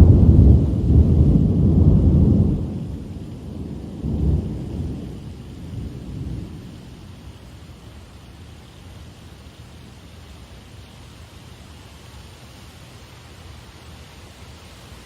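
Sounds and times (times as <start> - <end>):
thunder rumbling: 0.0 - 7.4
steady rain: 0.0 - 15.0.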